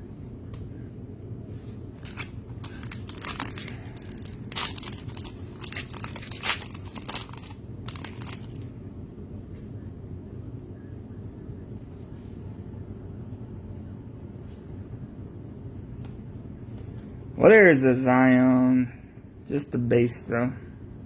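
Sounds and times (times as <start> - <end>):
low hum: 0.0 - 17.4
plastic wrapper tearing and crinkling: 2.0 - 8.6.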